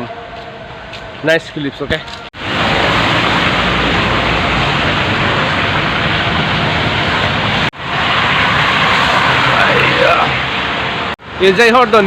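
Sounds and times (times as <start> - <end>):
tyres hissing on wet road: 2.4 - 12.0.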